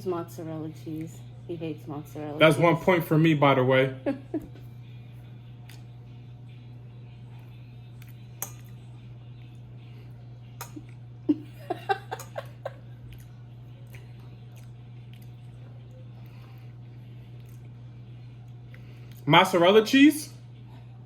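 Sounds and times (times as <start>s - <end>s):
steady low hum: 0.0s - 21.0s
person giggling: 4.0s - 4.6s, 11.3s - 13.0s.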